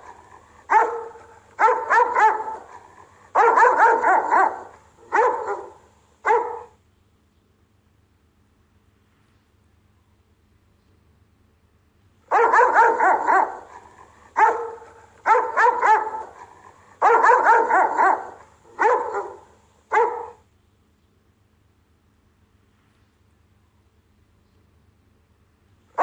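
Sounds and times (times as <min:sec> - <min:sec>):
dog barking loudly: 0:00.0 - 0:06.8, 0:12.3 - 0:20.4.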